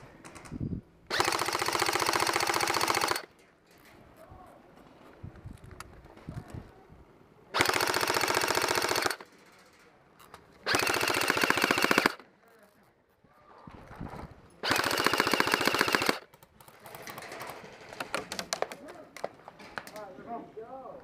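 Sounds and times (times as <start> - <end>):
airsoft gun firing bursts: 1.1 - 3.3, 7.6 - 9.2, 10.6 - 12.2, 14.6 - 16.3.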